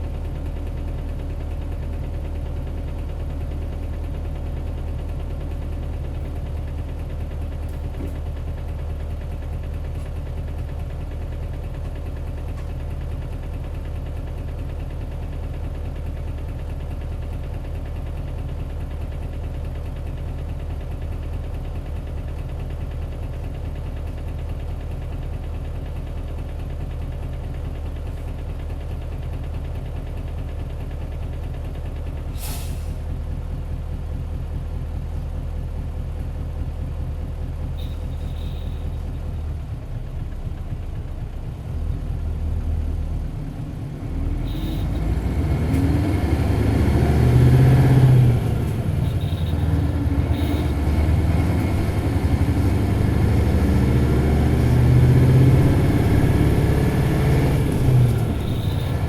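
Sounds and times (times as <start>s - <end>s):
diesel bus engine idling: 0.0s - 59.0s
bus engine revving: 43.6s - 59.0s.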